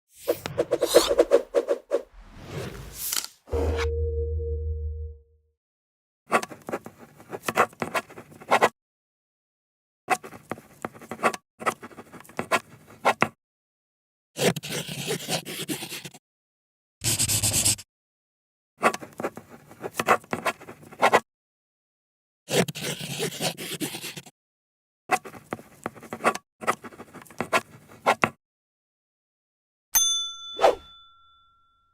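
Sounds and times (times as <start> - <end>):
pen scratching on paper: 0.3 - 1.9, 6.4 - 8.7, 10.1 - 13.3, 14.4 - 16.2, 17.0 - 17.8, 18.8 - 21.2, 22.5 - 24.3, 25.1 - 28.3.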